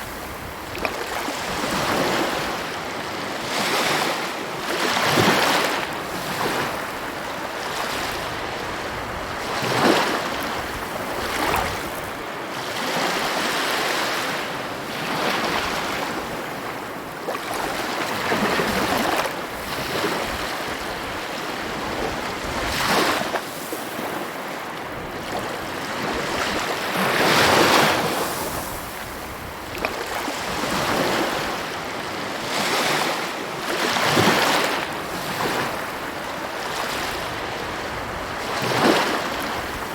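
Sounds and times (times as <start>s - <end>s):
sea waves breaking on shore: 0.0s - 39.9s.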